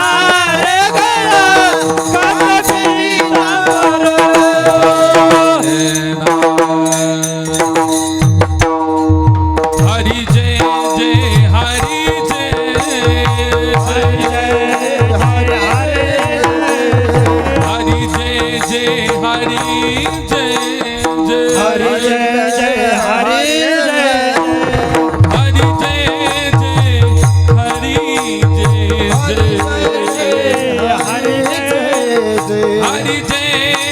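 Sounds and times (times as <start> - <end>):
person singing devotional song: 0.0 - 8.4, 9.7 - 33.9
harmonium drone: 7.2 - 23.5.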